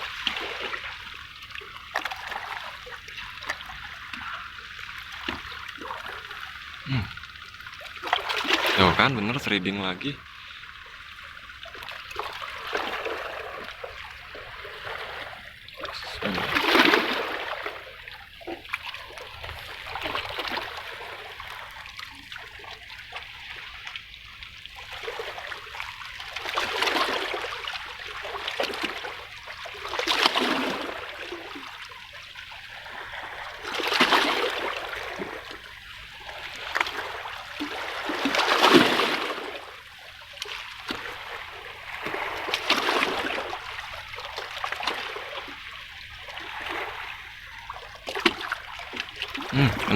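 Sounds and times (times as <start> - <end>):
seawater splashing against rocks: 7.9 - 10.6, 11.7 - 23.3, 36.4 - 49.9.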